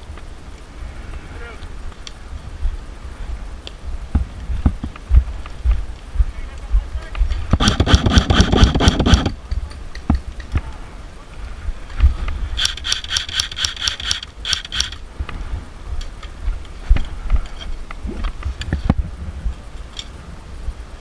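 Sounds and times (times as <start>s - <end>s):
airsoft rifle full-auto bursts: 7.6s - 9.4s, 12.6s - 15.0s.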